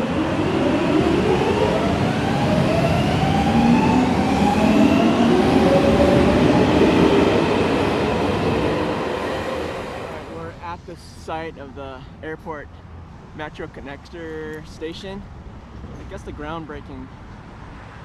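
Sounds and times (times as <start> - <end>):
train rolling rumble: 0.0 - 11.4.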